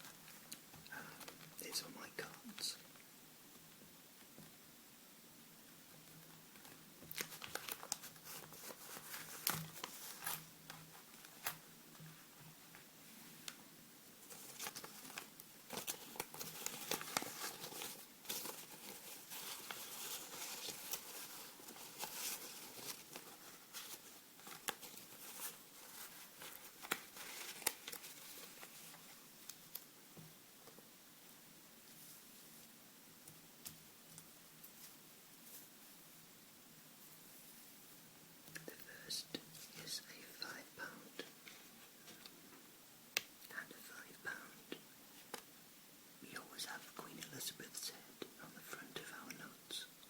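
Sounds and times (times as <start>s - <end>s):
banknotes crinkling: 6.6s - 11.6s, 14.2s - 29.8s.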